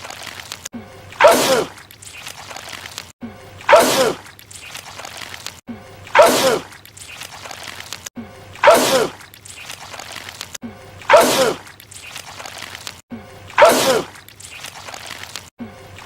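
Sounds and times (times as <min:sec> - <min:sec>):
man sneezing: 0:06.2 - 0:06.7, 0:08.6 - 0:09.2, 0:11.1 - 0:11.6, 0:13.6 - 0:14.1.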